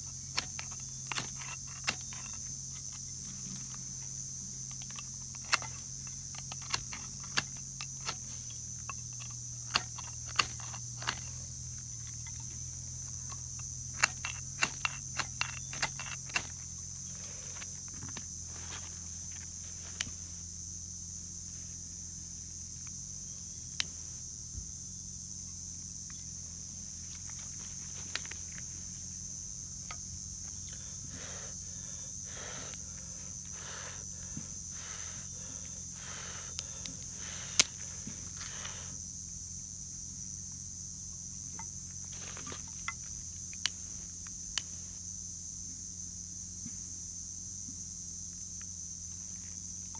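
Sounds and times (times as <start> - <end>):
firewood and tools knocking: 0.0 - 18.9
insect chirring: 0.0 - 49.9.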